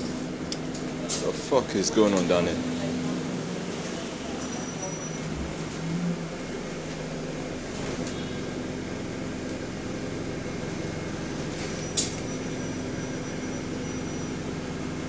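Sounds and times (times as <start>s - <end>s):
bus interior drone: 0.0s - 15.0s.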